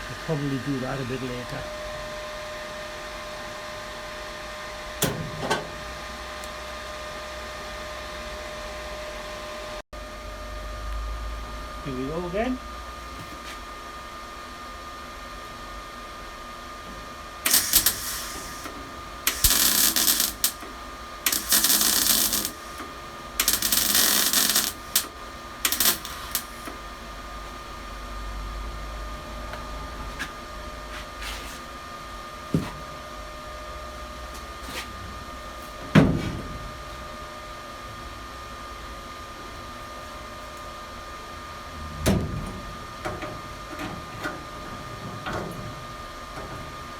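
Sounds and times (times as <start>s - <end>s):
welder crackling bursts: 17.4s - 26.8s
faint hum: 17.4s - 31.0s.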